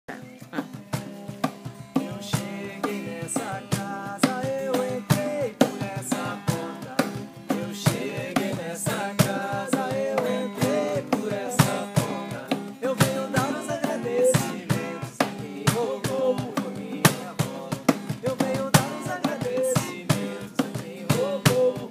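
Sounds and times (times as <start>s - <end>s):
drums beating fast rhythm: 0.1s - 21.9s.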